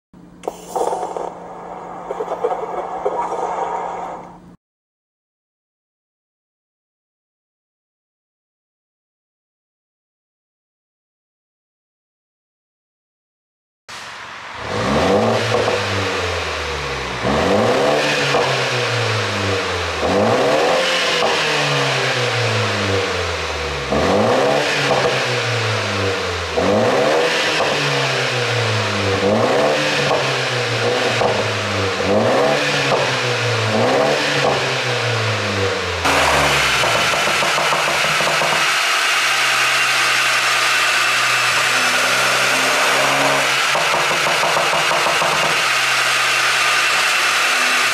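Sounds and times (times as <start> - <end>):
car engine idling: 13.9 - 20.3, 35.0 - 42.9
car engine revving with pops: 14.6 - 47.9.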